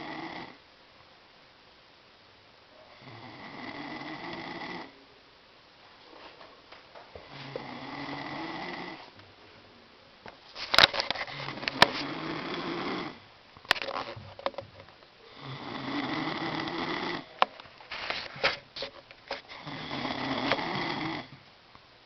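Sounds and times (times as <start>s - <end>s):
boy snoring: 0.0s - 0.6s, 2.9s - 5.0s, 7.2s - 9.1s, 11.3s - 13.2s, 15.3s - 17.4s, 19.4s - 21.4s.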